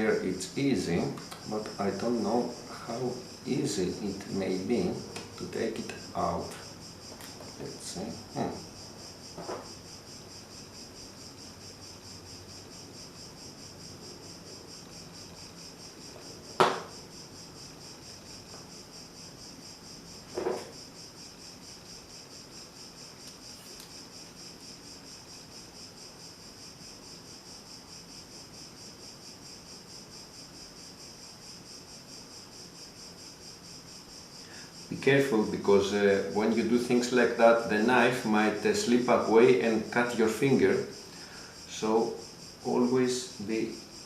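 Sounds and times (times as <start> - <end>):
high-pitched insect chirping: 0.0 - 44.0
sharp knocks: 16.5 - 17.0.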